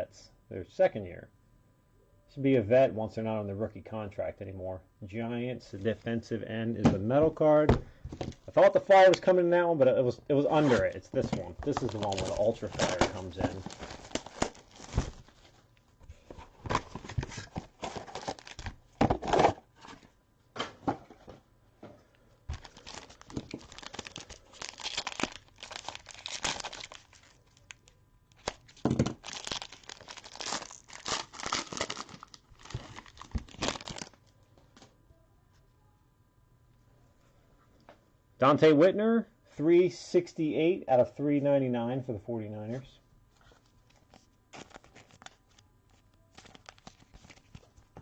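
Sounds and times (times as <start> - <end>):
packaging tearing and crinkling: 10.7 - 15.6, 16.4 - 19.6, 22.5 - 34.3, 43.9 - 47.7.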